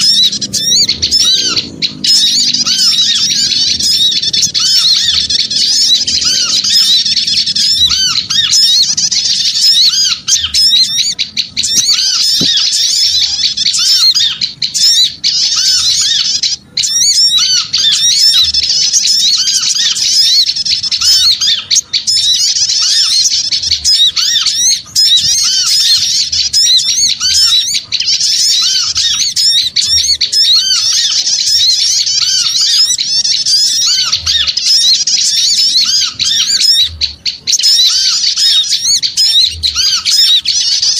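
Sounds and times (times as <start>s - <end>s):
flock of small birds chattering: 0.0s - 40.9s.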